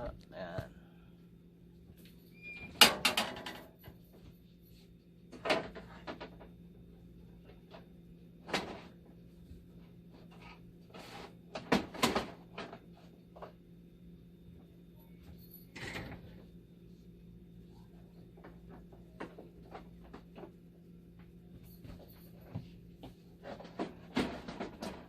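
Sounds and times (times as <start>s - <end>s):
machine panels knocking and clattering: 2.8s - 3.7s, 23.5s - 25.0s.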